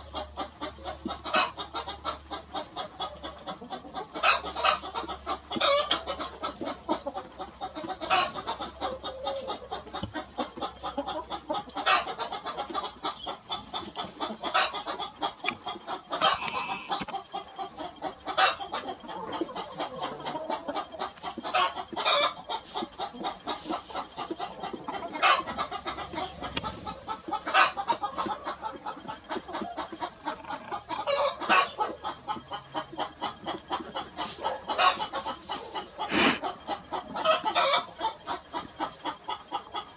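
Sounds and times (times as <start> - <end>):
chickens clucking: 0.0 - 39.9
loud sharp chicken call: 14.5 - 17.1, 35.6 - 36.5.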